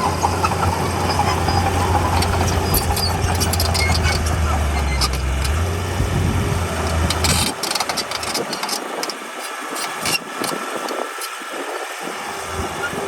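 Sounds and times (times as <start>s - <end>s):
clanks and knocks: 0.0s - 5.7s, 6.7s - 11.0s
heavy machinery diesel engine running: 0.0s - 13.0s.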